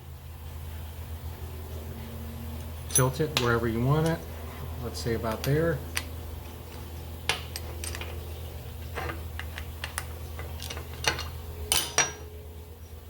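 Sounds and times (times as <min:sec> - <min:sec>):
steady low hum: 0:00.0 - 0:13.0
short metallic ring: 0:02.9 - 0:03.2.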